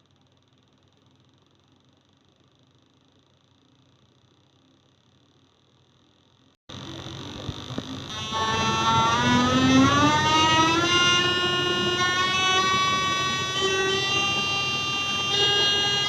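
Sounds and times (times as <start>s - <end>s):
harsh buzzing tone rising in pitch: 6.7s - 16.0s.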